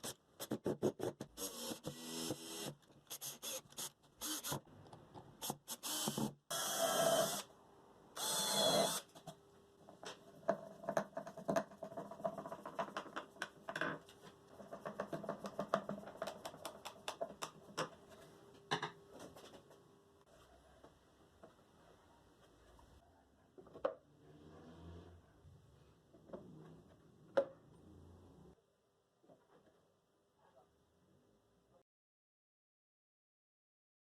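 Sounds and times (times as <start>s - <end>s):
taps and clicks of tools and wood: 9.1s - 19.8s.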